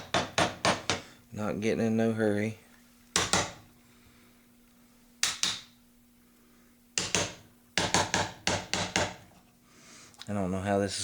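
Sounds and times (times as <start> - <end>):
chisel knocking on wood: 0.0 - 1.1, 3.2 - 3.6, 5.2 - 5.7, 7.0 - 9.2.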